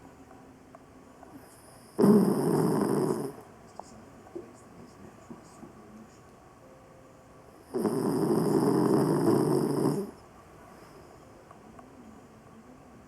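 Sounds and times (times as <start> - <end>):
dog snoring: 1.4 - 3.4, 7.6 - 10.2.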